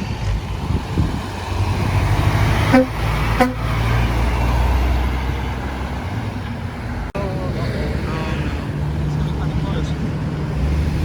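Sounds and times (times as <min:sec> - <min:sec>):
truck engine running: 0:00.0 - 0:11.0
truck horn toots: 0:02.6 - 0:04.2.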